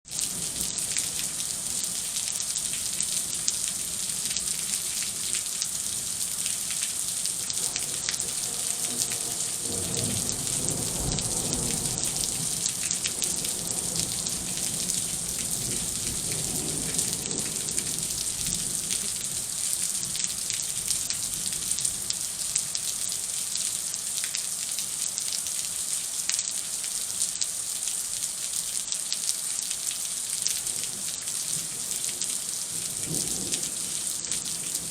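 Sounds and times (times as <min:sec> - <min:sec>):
heavy rain falling: 0:00.1 - 0:34.9
thunder rumble: 0:07.7 - 0:18.9.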